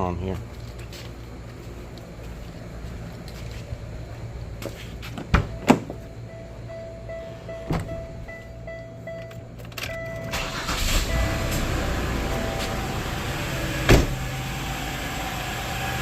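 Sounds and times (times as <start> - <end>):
dashboard warning chime beeping: 5.5 - 13.8
car engine cranking and starting: 9.3 - 16.0
door or seat knocks: 13.9 - 14.2.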